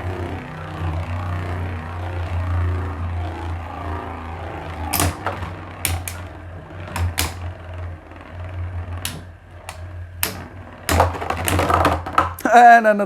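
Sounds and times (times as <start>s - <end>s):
spinning tops clacking together: 4.9s - 6.2s, 9.1s - 12.4s.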